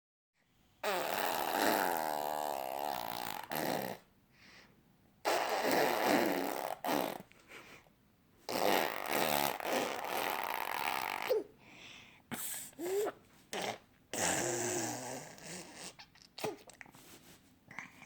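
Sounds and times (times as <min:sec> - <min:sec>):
baby blowing raspberries: 0:00.8 - 0:04.1, 0:05.2 - 0:07.3, 0:08.5 - 0:11.5, 0:12.3 - 0:16.9.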